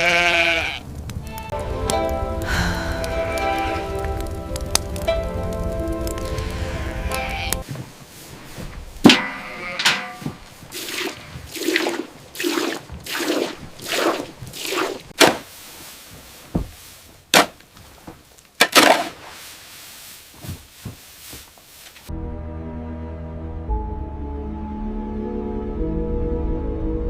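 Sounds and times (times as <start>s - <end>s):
music: 1.2s - 7.6s, 22.1s - 27.0s
quick scraping strokes: 10.7s - 16.2s.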